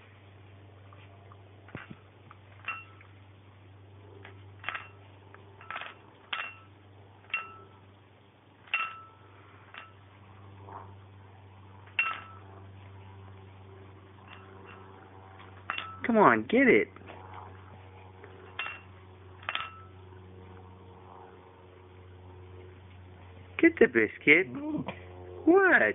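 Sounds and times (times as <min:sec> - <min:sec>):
low hum: 0:00.0 - 0:25.9
plate clinking: 0:02.6 - 0:03.1, 0:04.6 - 0:05.0, 0:05.6 - 0:06.7, 0:07.3 - 0:07.8, 0:08.6 - 0:10.0, 0:12.0 - 0:12.5, 0:15.7 - 0:16.0, 0:18.5 - 0:20.0.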